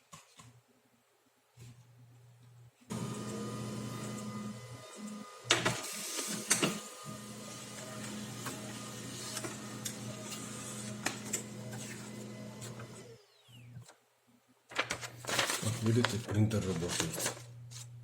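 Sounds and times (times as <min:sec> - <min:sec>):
printer motor hum: 0:02.9 - 0:13.3
paper feeding clicks and clatter: 0:05.5 - 0:06.8, 0:07.7 - 0:13.1, 0:14.7 - 0:17.9.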